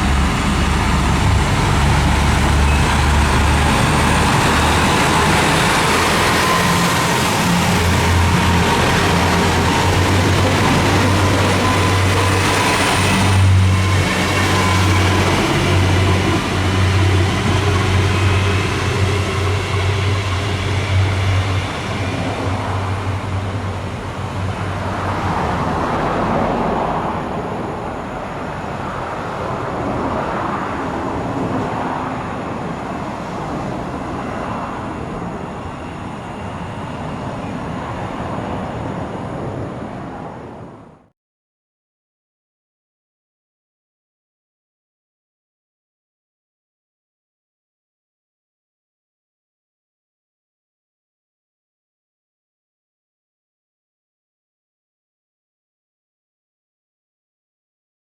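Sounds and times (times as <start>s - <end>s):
diesel engine drone: 0.0s - 39.6s
wheels rumbling on rail: 0.0s - 41.1s.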